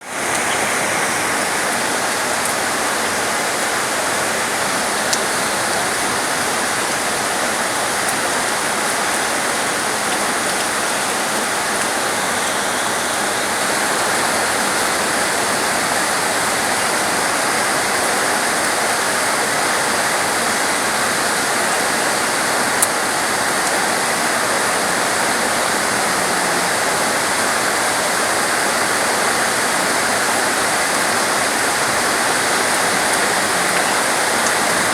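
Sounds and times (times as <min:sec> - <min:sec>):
heavy rain pouring: 0:00.0 - 0:34.9.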